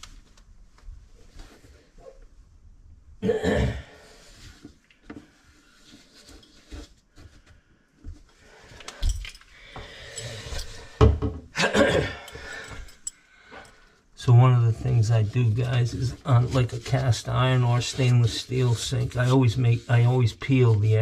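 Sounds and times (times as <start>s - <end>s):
metal parts clicking and handling: 8.8s - 9.5s.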